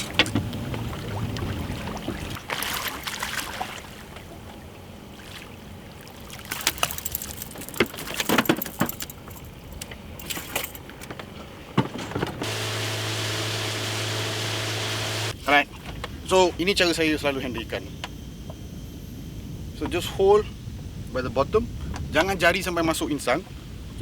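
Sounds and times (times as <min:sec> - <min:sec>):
fishing tackle jangling: 0:06.5 - 0:10.9
metallic clinks and rattles: 0:06.5 - 0:11.1.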